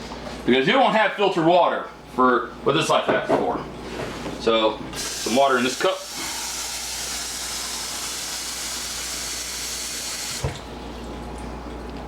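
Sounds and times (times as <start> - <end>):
tap water running into a cup: 5.0 - 10.7.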